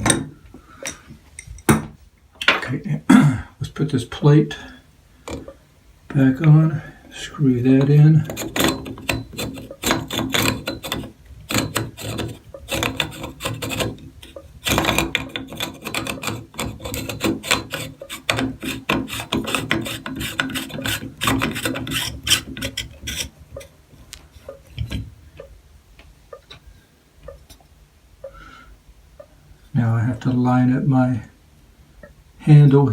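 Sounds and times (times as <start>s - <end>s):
screwdriver rasping on metal: 7.7s - 23.7s.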